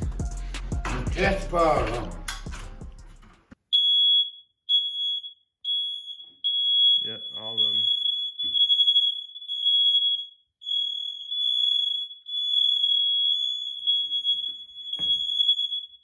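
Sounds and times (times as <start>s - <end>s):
smoke alarms high steady tone: 3.7s - 16.0s.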